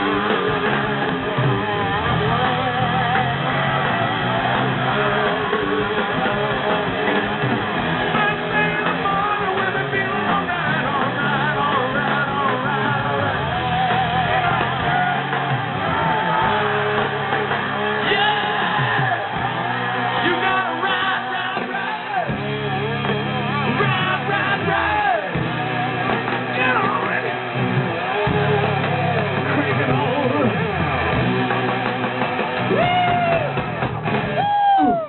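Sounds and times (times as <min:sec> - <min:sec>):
bass guitar: 0:00.0 - 0:35.0
drums: 0:00.0 - 0:35.0
electric guitar: 0:00.0 - 0:35.0
person singing: 0:08.1 - 0:15.3.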